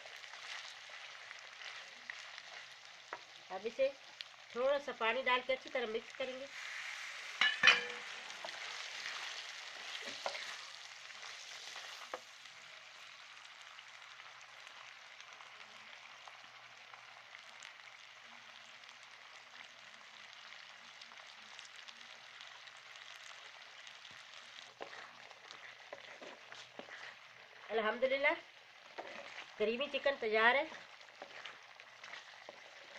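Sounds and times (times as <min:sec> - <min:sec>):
food sizzling in a hot pan: 0:00.0 - 0:32.9
spoon clicking on pan: 0:07.4 - 0:08.1.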